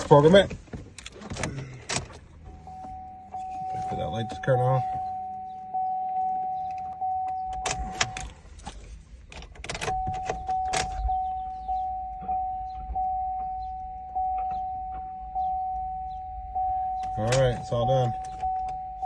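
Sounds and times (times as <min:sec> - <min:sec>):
car key clicking and rattling: 0:00.0 - 0:02.5, 0:06.1 - 0:11.2, 0:17.0 - 0:19.0
dashboard warning chime dinging: 0:02.4 - 0:08.5, 0:09.4 - 0:19.0.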